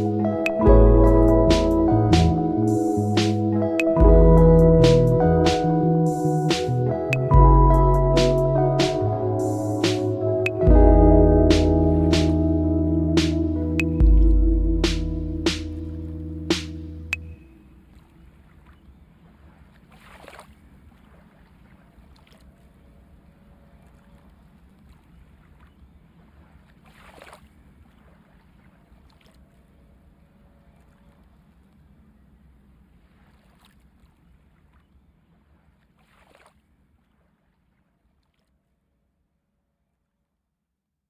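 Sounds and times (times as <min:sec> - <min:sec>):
faint low hum: 0:10.6 - 0:18.9.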